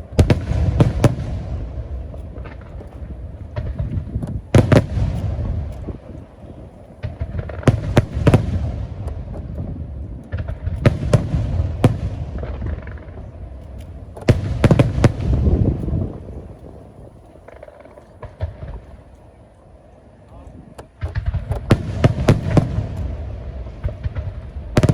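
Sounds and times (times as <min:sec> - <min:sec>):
low rumbling echo: 0:00.0 - 0:17.3
fireworks bursting: 0:00.0 - 0:19.2, 0:20.7 - 0:24.9.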